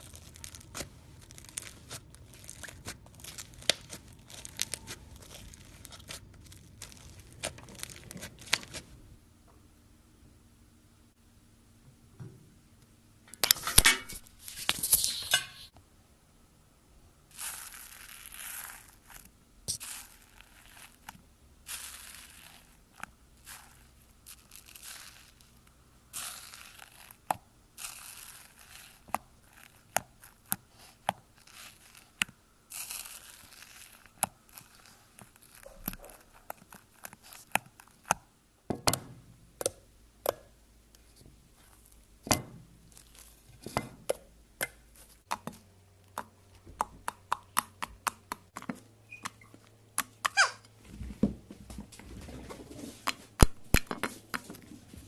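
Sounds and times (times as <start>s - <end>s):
slime stretching and tearing: 0.0s - 8.9s, 17.3s - 38.2s, 42.9s - 43.6s.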